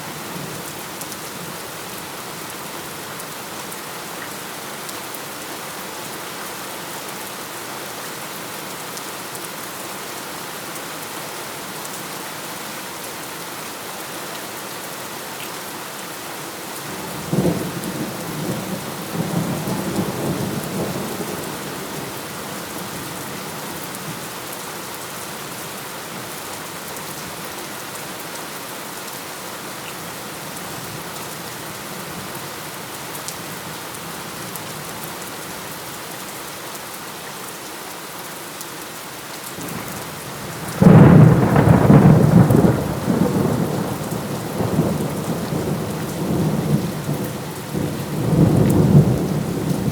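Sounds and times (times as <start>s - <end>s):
steady rain: 0.0s - 49.9s
thunder crack and rumble: 40.7s - 46.8s.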